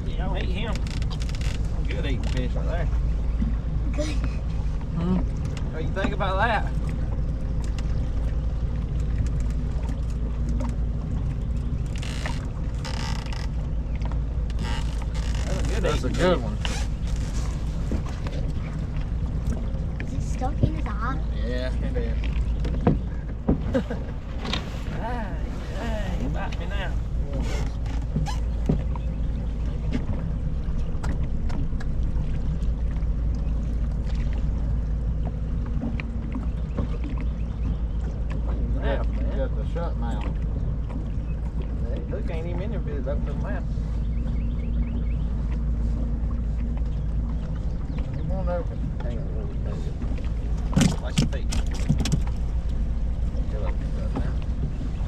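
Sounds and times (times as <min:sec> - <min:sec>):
boat ambience rumble: 0:00.0 - 0:55.0
light clicks and knocks: 0:50.0 - 0:52.8.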